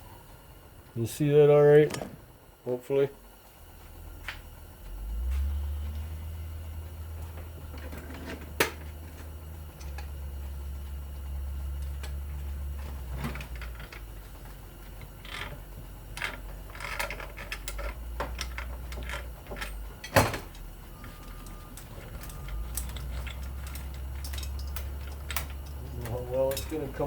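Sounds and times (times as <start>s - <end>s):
steady low hum: 0.0s - 27.0s
hand tools clicking on metal: 21.3s - 27.0s.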